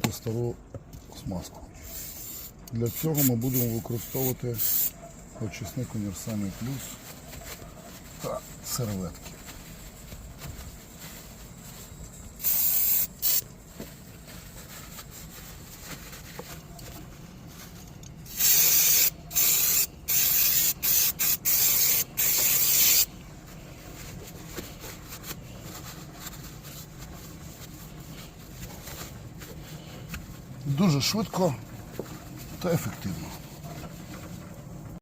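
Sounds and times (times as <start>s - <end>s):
aerosol can spraying: 1.9s - 4.9s, 12.4s - 13.4s, 18.3s - 23.1s.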